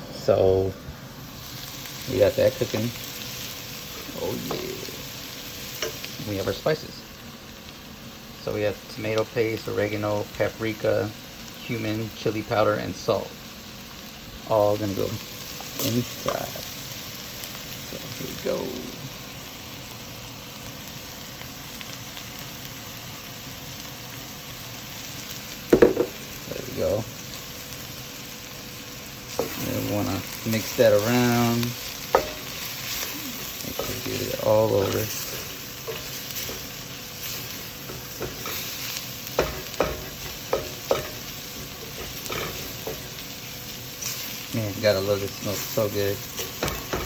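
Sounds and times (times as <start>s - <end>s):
vegetables sizzling in oil: 0.0s - 47.0s
utensil knocking against pot: 25.7s - 26.1s.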